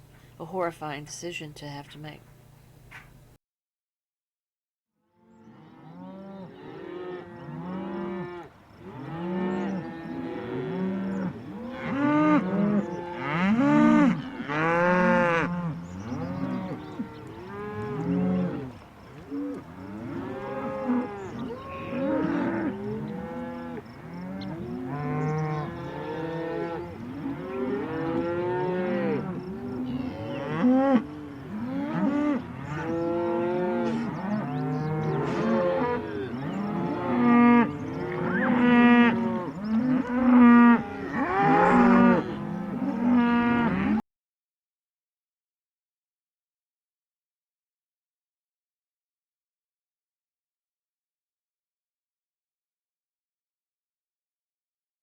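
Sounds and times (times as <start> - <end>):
cattle mooing: 5.4 - 18.7, 19.3 - 44.0.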